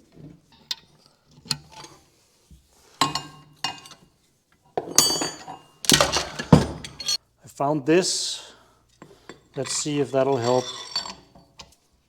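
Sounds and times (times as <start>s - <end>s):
metal hand tools clinking: 4.8s - 7.2s, 9.0s - 11.7s.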